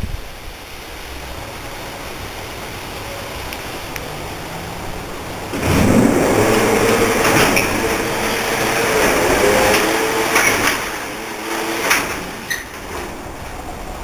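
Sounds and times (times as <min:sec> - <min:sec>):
door clanking and rattling: 0:05.5 - 0:13.9
garage door opener motor whine: 0:05.5 - 0:13.9.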